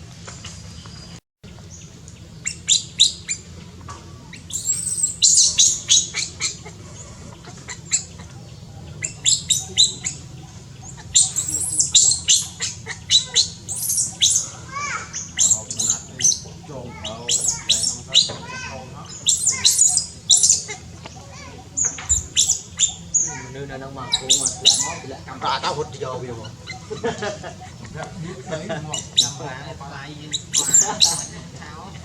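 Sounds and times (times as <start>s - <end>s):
steady low hum: 0.0s - 32.0s
high-pitched animal chirps: 2.4s - 3.5s, 4.3s - 23.5s, 24.1s - 25.1s, 28.9s - 29.4s, 30.2s - 31.4s.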